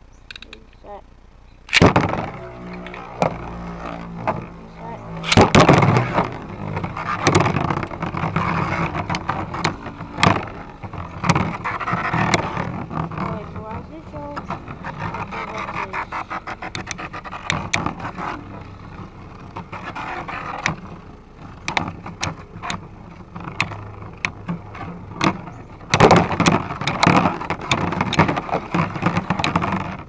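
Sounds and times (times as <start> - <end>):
spinning tops whirring: 1.7 - 20.7.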